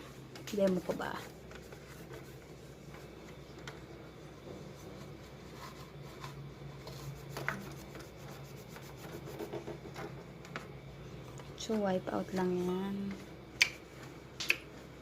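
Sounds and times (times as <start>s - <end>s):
cloth rubbing on machine: 0.0s - 9.7s.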